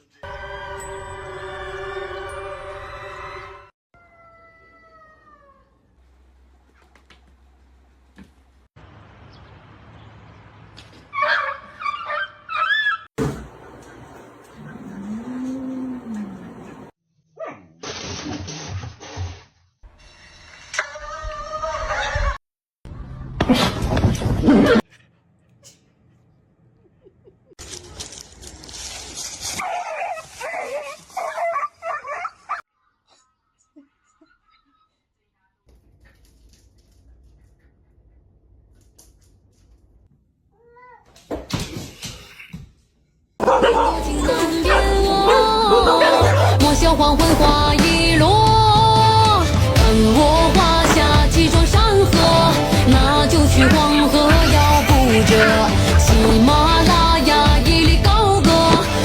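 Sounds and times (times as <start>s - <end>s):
cat meowing: 4.0s - 5.7s
dog whining and yipping: 11.2s - 13.1s, 43.4s - 46.6s
rustling noise: 27.6s - 31.4s.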